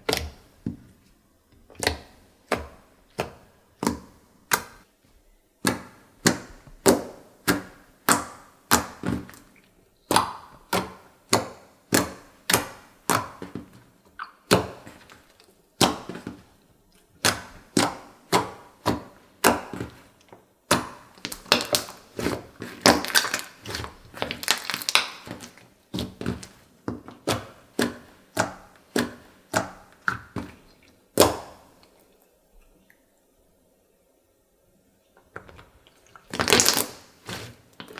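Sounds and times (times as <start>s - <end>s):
slime kneading with air popping: 5.6s - 31.9s, 35.4s - 37.9s.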